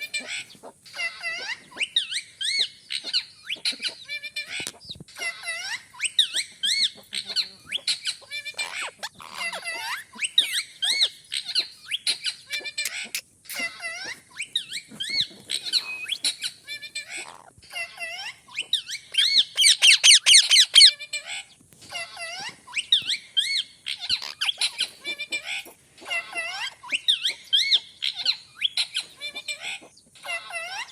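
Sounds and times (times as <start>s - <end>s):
parrot chirping and whistling: 18.6s - 20.9s.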